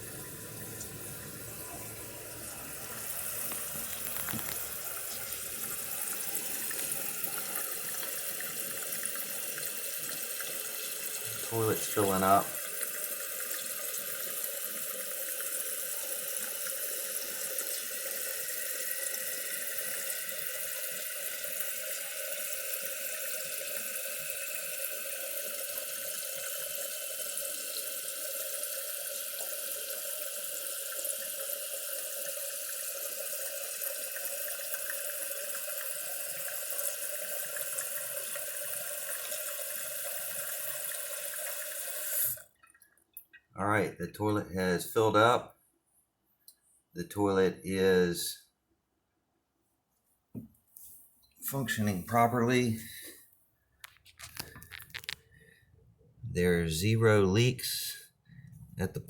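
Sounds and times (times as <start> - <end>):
toilet tank refilling: 0.0 - 43.3, 53.8 - 55.6.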